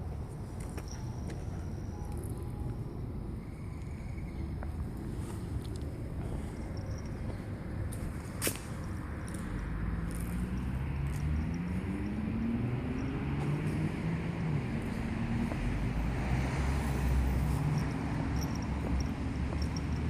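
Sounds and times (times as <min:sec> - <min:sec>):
low rumble of traffic: 0:00.0 - 0:20.0
passing motor vehicle engine: 0:05.2 - 0:20.0.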